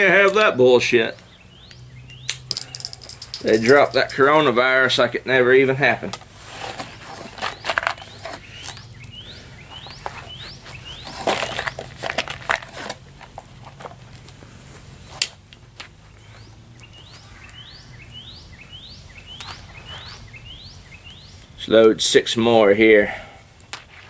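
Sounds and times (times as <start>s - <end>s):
bird chirping: 1.2s - 4.0s, 7.4s - 11.8s, 16.3s - 21.6s.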